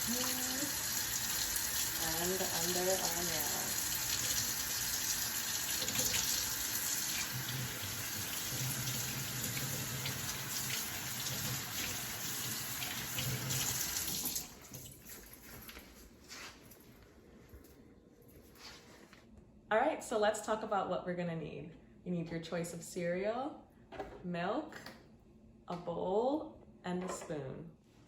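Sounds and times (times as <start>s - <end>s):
tap water running into sink: 0.0s - 15.2s.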